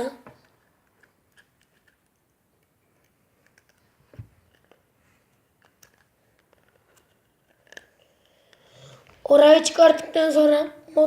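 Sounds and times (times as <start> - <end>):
clicks and taps of small parts: 0.2 - 3.9, 5.6 - 7.9.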